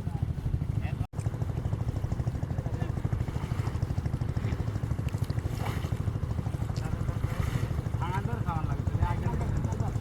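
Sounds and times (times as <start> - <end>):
small engine running: 0.0 - 10.0.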